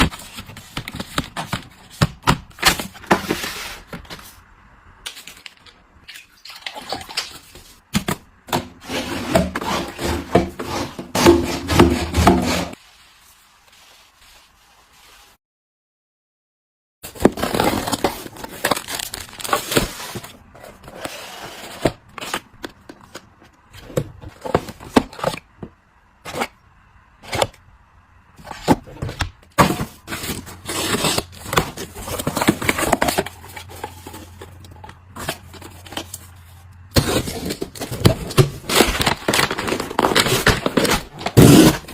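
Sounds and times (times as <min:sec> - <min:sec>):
scraping and crinkling: 0:17.1 - 0:26.6, 0:28.4 - 0:41.9.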